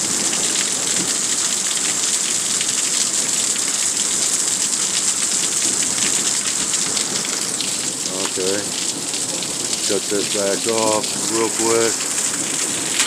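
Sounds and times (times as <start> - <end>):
heavy rain falling: 0.0 - 13.0.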